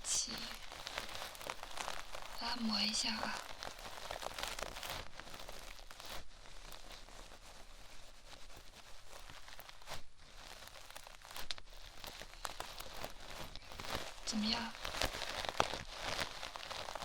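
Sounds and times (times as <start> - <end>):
hands rubbing microphone: 3.4 - 17.0.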